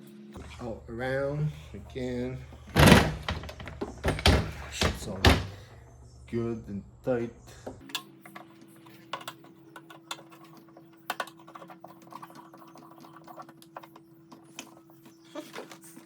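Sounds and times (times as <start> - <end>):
plastic parts clicking together: 7.8 - 14.8.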